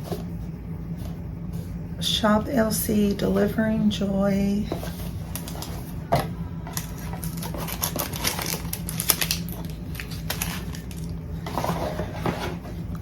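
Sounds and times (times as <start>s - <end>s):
packaging crinkling and rustling: 4.7s - 6.0s, 6.7s - 12.9s.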